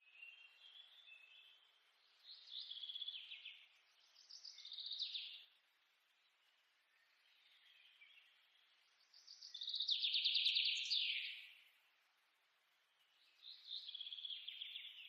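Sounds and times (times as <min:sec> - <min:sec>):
songbird singing trills: 0:00.0 - 0:11.9, 0:12.8 - 0:15.0
background hiss: 0:00.0 - 0:15.0.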